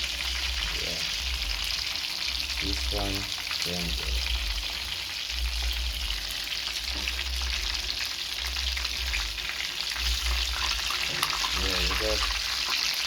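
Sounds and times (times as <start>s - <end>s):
chicken frying in hot oil: 0.0s - 13.0s.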